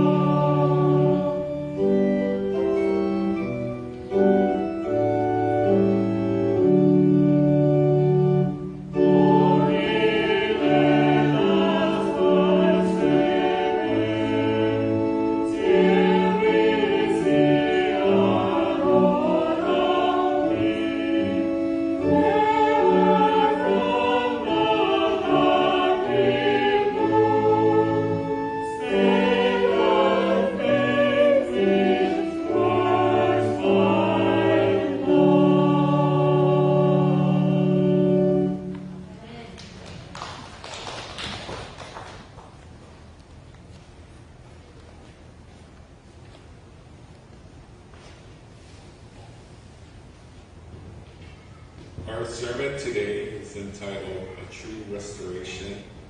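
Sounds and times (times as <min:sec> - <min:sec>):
choir singing a hymn: 0:00.0 - 0:39.0
organ playing: 0:00.0 - 0:39.1.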